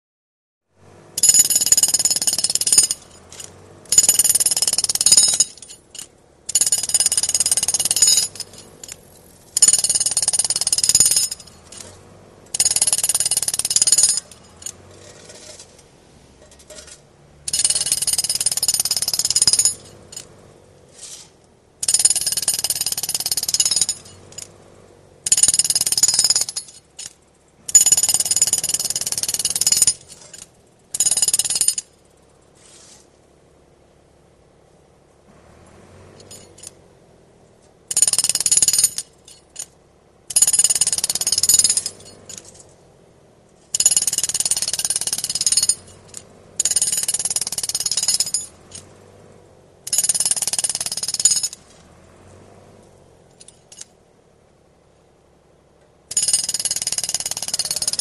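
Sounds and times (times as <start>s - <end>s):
jackhammer hammering: 1.2s - 15.6s, 16.4s - 20.6s, 21.8s - 32.2s, 37.9s - 39.7s, 40.3s - 42.7s, 43.7s - 51.8s, 56.1s - 58.0s.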